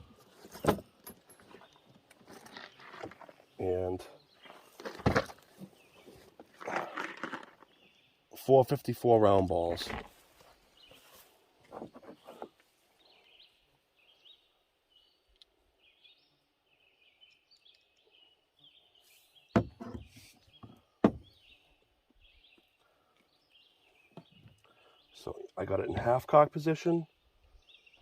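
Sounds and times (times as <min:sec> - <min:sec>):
small birds chirping: 0:00.0 - 0:28.0
sharp loud knocks: 0:19.5 - 0:20.1, 0:21.0 - 0:21.3.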